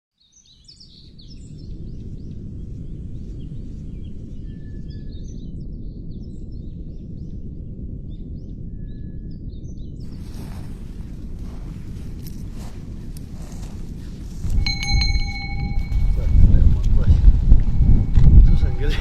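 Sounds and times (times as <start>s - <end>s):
wind rumble on microphone: 0.2s - 19.0s
rushing hiss of wind: 0.8s - 5.3s, 10.0s - 19.0s
long thin whistled notes: 13.5s - 19.0s.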